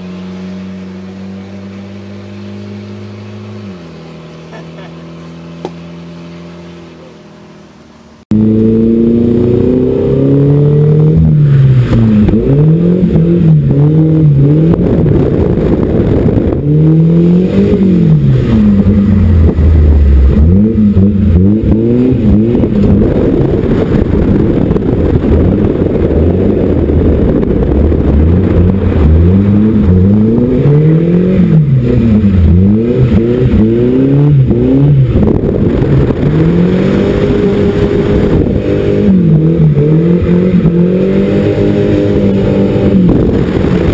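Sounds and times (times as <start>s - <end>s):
car engine revving: 0.0s - 43.9s
steady engine hum: 0.0s - 43.9s.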